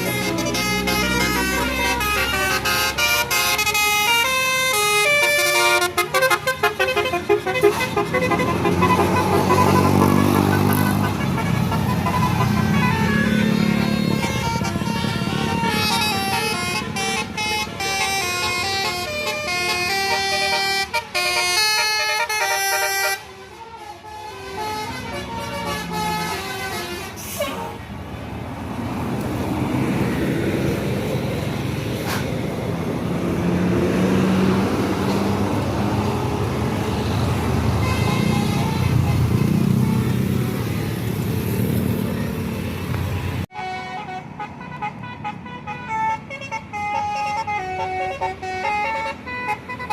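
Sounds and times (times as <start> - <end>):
multi-tone air horn melody: 0.0 - 27.8, 37.7 - 41.2, 43.5 - 49.9
bus engine: 0.0 - 49.9
road noise: 0.0 - 49.9.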